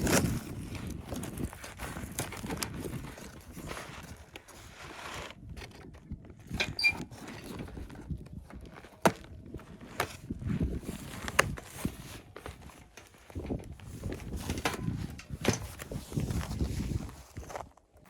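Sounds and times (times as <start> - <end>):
brief squeak: 6.6 - 7.1.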